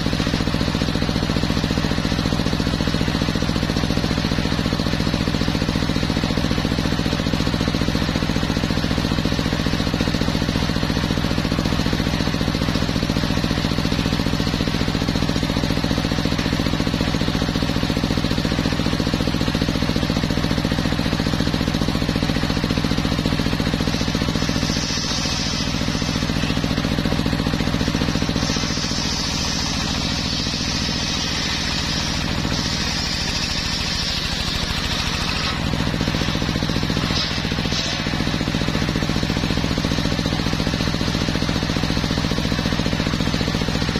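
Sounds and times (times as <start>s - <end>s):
saw blade cutting log: 12.7s - 41.5s
circular sawmill droning: 20.7s - 43.6s.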